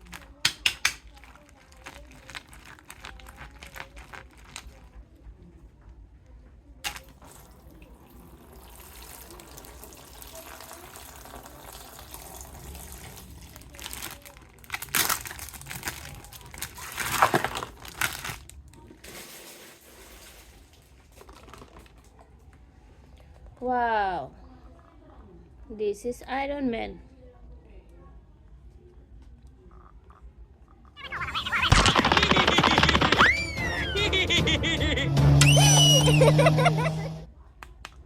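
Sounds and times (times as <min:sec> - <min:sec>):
plastic packaging crinkling: 0:00.0 - 0:05.0, 0:13.1 - 0:22.1, 0:31.4 - 0:33.4.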